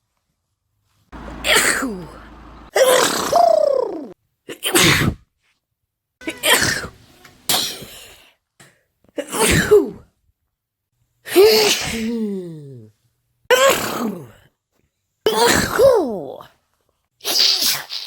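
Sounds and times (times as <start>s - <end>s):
woman sneezing: 4.5s - 5.2s, 9.2s - 10.0s, 11.3s - 12.9s, 13.5s - 14.3s, 15.3s - 16.2s.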